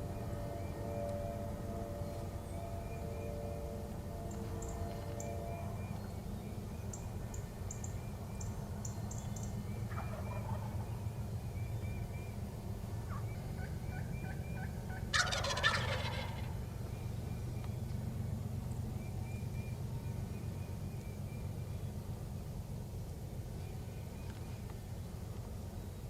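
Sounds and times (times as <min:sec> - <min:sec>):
steady low rumble: 0:00.0 - 0:15.2
turkey gobbling: 0:09.9 - 0:10.9, 0:13.1 - 0:16.6.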